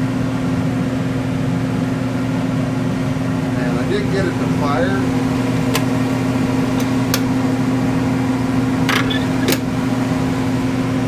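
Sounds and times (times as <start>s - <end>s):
heater humming: 0.0s - 11.0s.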